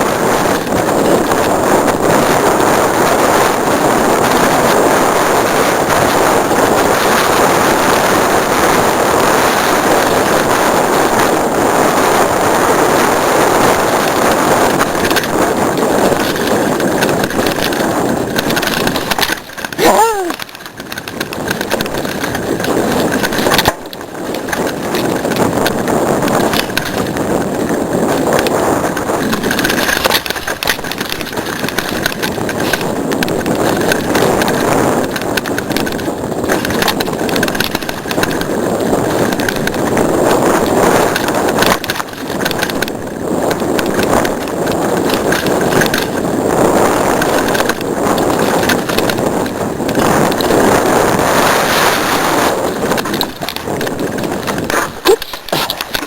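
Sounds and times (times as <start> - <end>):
bike tyres rushing on dirt: 0.0 - 56.0
bike clattering and knocking: 13.8 - 51.2, 52.6 - 56.0.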